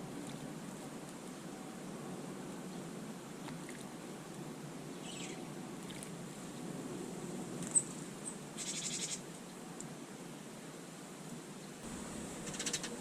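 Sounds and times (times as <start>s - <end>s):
small birds chirping: 4.9s - 6.0s, 7.7s - 9.3s, 11.8s - 13.0s.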